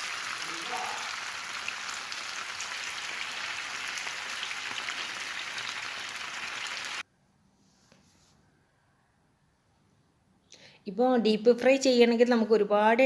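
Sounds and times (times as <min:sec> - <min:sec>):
chicken sizzling in a pan: 0:00.0 - 0:07.0.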